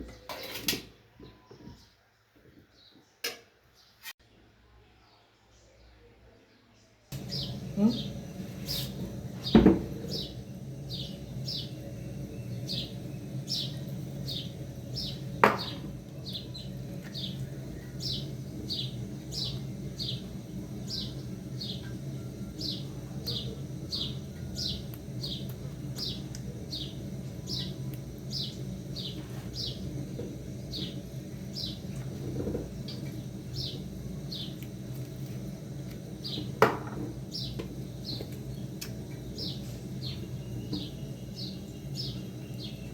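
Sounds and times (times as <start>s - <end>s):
steady low hum: 7.1s - 42.9s
bird chirping: 7.2s - 29.9s.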